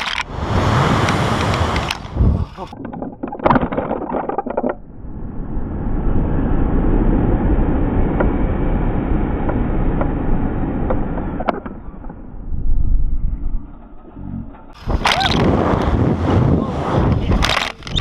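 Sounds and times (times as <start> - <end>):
rattle of clicks: 0.0 - 0.3, 17.2 - 18.0
wind rushing on microphone: 0.0 - 2.7, 4.9 - 13.6, 14.8 - 18.0.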